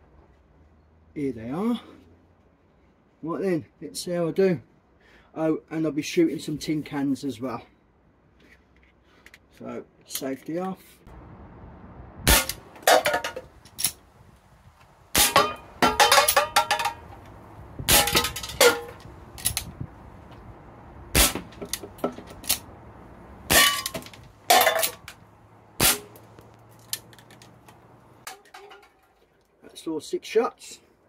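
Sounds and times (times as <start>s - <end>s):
air pistol shots cracking: 12.3s - 12.7s, 15.1s - 15.6s, 21.1s - 21.8s, 25.8s - 26.3s
pellets clanging on tin cans: 15.2s - 17.2s, 17.9s - 19.1s, 23.5s - 25.2s.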